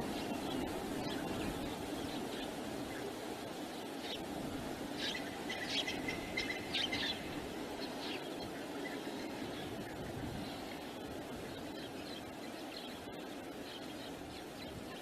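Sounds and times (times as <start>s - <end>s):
wind rumble: 0.0s - 15.0s
bird chirping: 5.0s - 14.9s.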